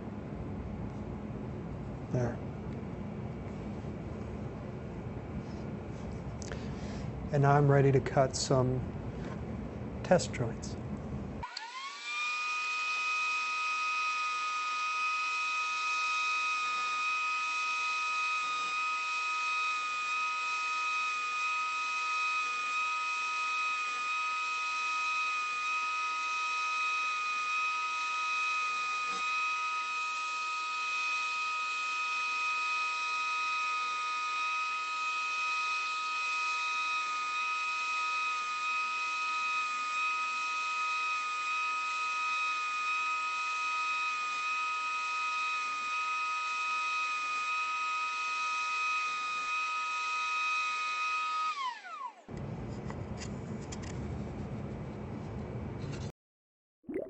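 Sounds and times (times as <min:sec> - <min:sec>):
router high-pitched whine: 0:11.4 - 0:52.4.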